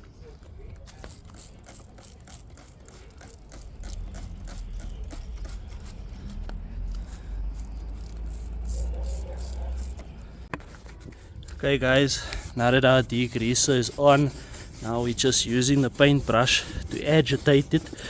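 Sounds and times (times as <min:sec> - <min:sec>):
paintbrush scrubbing carpet: 0:11.8 - 0:18.0.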